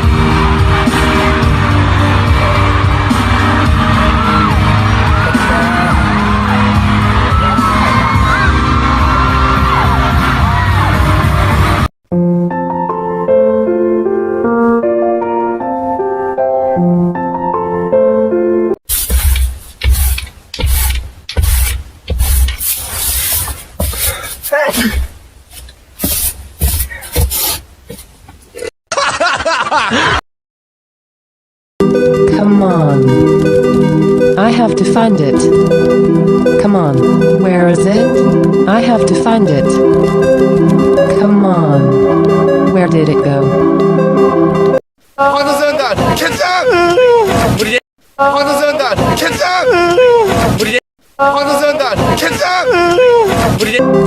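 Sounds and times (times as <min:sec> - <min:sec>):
crowd screaming and whooping: 0:00.0 - 0:11.8
loud pop music: 0:00.0 - 0:11.9
people laughing: 0:28.9 - 0:30.2.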